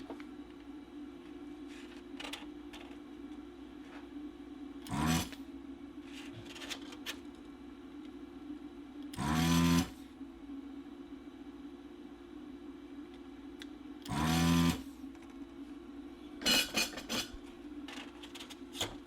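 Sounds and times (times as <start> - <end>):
vacuum pump buzzing: 0.0 - 7.1, 9.0 - 10.2, 13.9 - 15.2, 16.3 - 19.0
desoldering station humming: 0.0 - 19.0.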